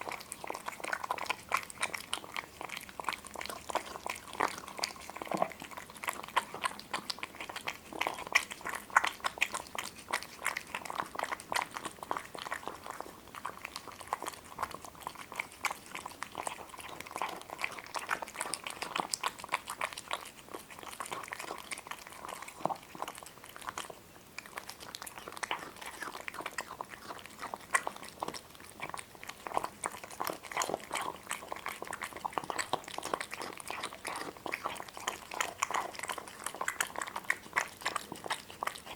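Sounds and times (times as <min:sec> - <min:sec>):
chewing and crunching crisp food: 0:00.0 - 0:38.9.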